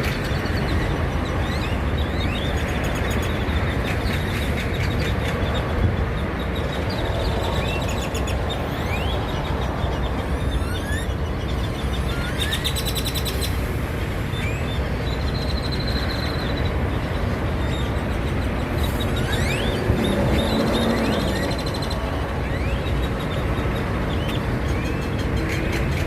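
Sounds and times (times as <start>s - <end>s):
birds whistling: 6.5s - 13.6s, 17.6s - 25.6s.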